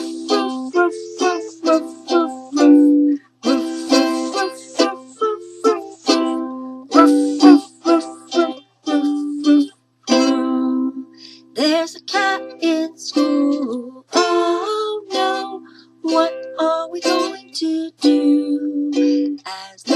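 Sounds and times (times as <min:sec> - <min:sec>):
ukulele strumming chords: 0:00.0 - 0:19.9.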